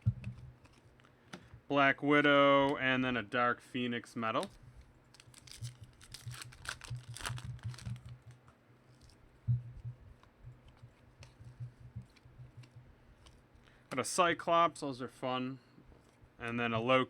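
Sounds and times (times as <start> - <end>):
steady low hum: 0.0 - 17.0
card packaging crinkling: 4.4 - 9.2.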